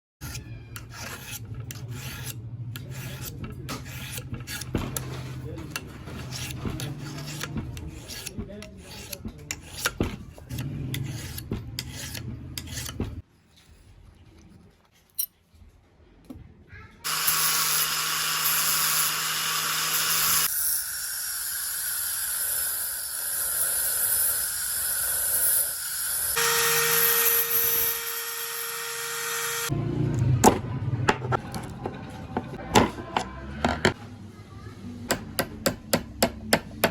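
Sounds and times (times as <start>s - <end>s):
filing rusty metal: 0.2s - 13.2s, 17.1s - 29.7s.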